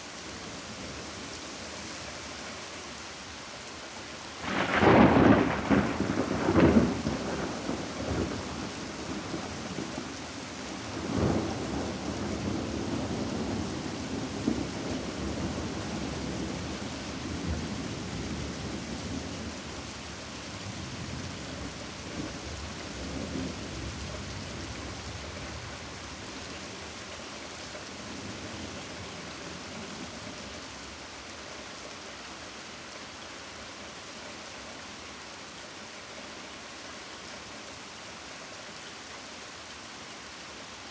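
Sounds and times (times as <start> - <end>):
steady rain: 0.0 - 40.9
thunder rumbling: 4.4 - 10.0.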